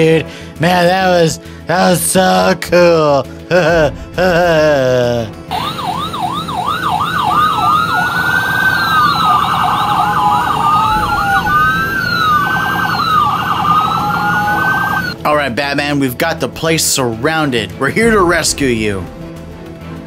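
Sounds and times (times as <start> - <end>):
siren wails: 5.5 - 15.2
siren warble: 5.5 - 15.2
siren yelps: 5.5 - 15.2.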